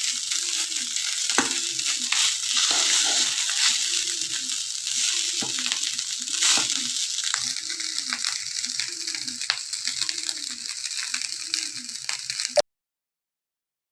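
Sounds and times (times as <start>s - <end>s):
rice sizzling in a pan: 0.0s - 12.6s
spatula scraping a pan: 0.5s - 7.4s.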